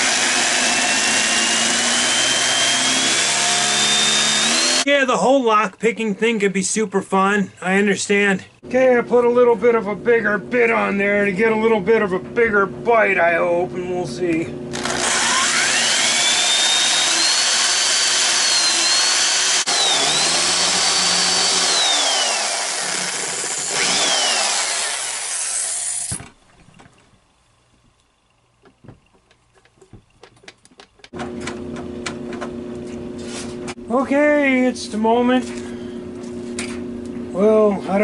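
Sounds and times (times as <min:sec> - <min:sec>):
electric drill whining: 0:00.0 - 0:04.8, 0:14.7 - 0:26.2.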